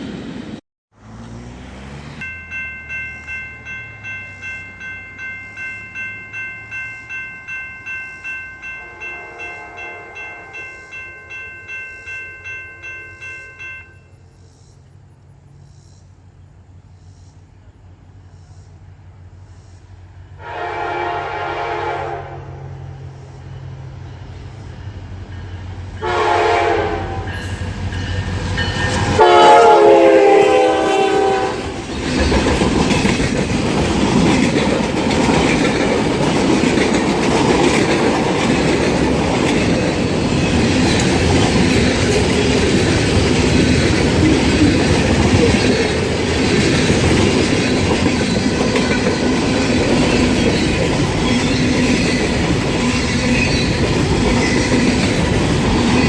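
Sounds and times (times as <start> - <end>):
train passing rumble: 0.0 - 56.0
train horn blasts: 8.8 - 11.2, 20.4 - 23.0, 26.0 - 27.6, 28.8 - 31.9
wheels clacking over rails: 31.6 - 56.0.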